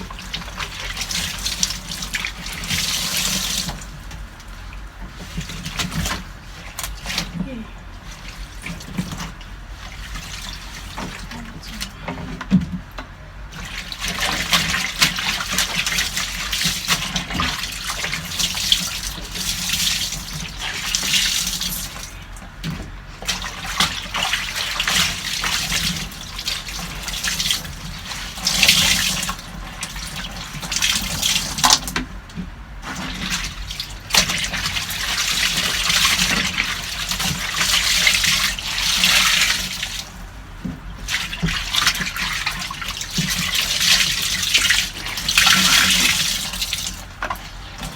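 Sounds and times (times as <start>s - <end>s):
water running and splashing: 0.0s - 12.2s, 23.2s - 32.0s, 32.8s - 47.9s.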